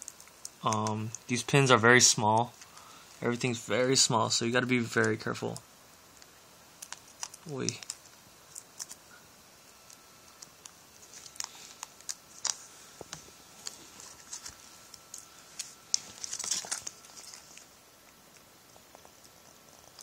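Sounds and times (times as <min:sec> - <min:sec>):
plastic crinkling and rustling: 0:11.0 - 0:17.7.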